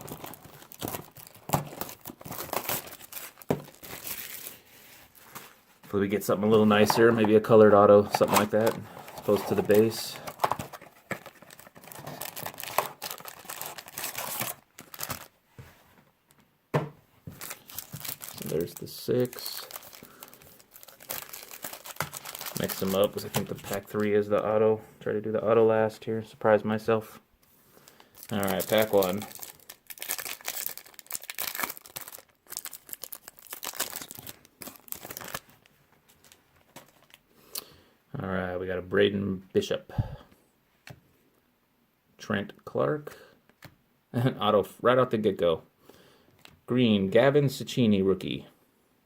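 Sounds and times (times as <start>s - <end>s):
packaging crinkling and tearing: 0.0s - 5.7s, 6.5s - 15.4s, 17.3s - 24.2s, 27.8s - 37.3s.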